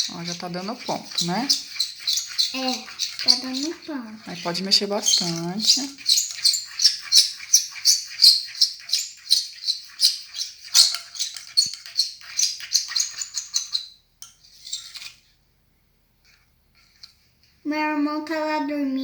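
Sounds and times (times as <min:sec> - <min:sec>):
slime squelching under a spoon: 0:00.0 - 0:15.2.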